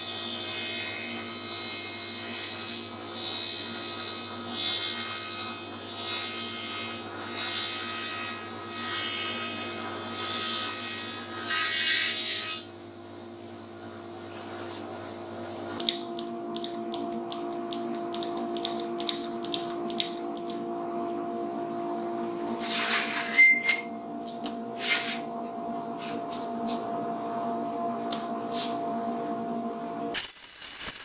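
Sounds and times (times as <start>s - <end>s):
planer cutting wood: 0.0s - 12.7s
thicknesser motor hum: 12.7s - 30.2s.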